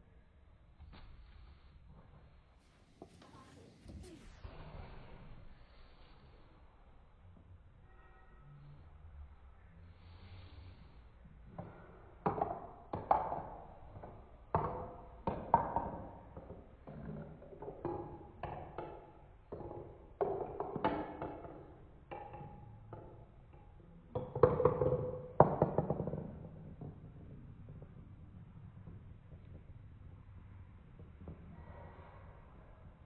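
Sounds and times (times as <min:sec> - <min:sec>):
marbles clacking on plastic track: 0:12.2 - 0:29.6.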